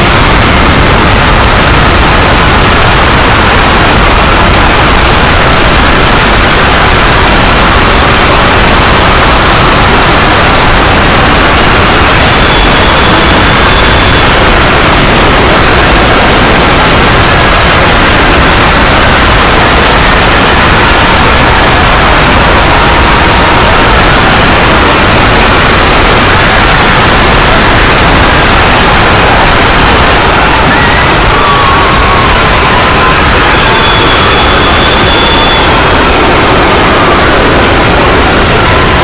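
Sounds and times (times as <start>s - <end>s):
static-like rushing noise: 0.0s - 39.0s
faint whistling tones: 33.6s - 35.9s.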